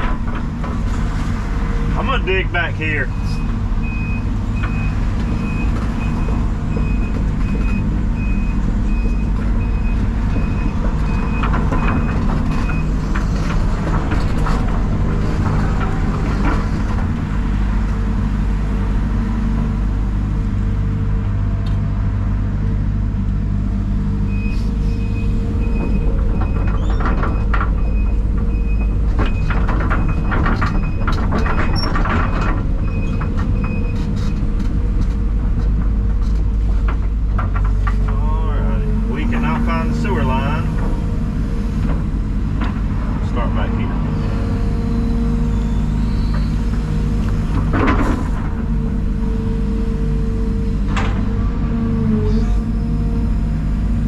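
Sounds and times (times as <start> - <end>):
metal clanks and rattles: 0.0 - 1.4, 25.6 - 38.2
diesel equipment running: 0.0 - 54.0
backup alarm beeping: 3.0 - 12.9.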